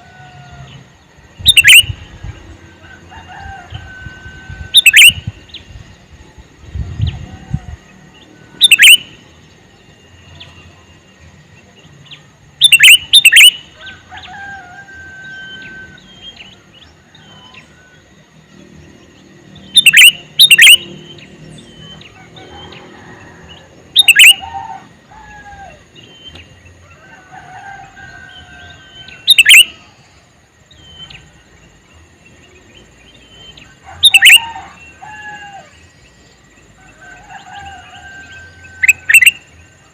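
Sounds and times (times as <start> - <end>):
soft whistled bird notes: 1.4 - 2.1, 4.8 - 5.6, 8.5 - 9.2, 12.1 - 13.6, 19.6 - 22.8, 24.0 - 24.6, 28.7 - 29.9, 38.4 - 39.4
bulbul sharp falling calls: 8.6 - 9.0, 12.6 - 13.6, 19.8 - 20.9, 24.0 - 24.4, 29.2 - 29.7.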